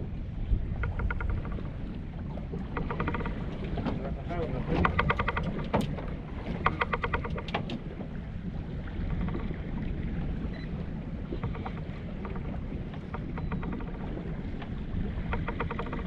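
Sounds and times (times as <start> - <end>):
small boat rumbling: 0.0 - 16.0
scattered ticks: 4.8 - 6.0, 6.6 - 7.8, 15.3 - 16.0.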